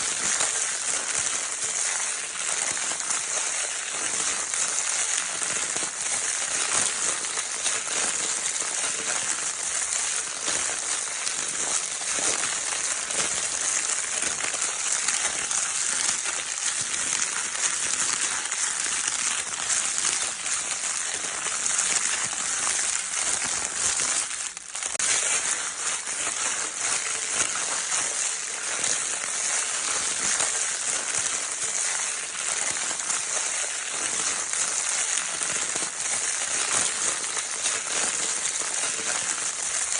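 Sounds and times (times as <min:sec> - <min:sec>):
crinkle paper being crumpled: 0:00.0 - 0:39.9.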